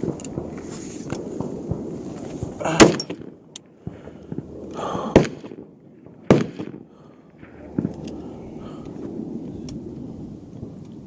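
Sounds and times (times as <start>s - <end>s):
rifle shots: 2.6s - 8.0s.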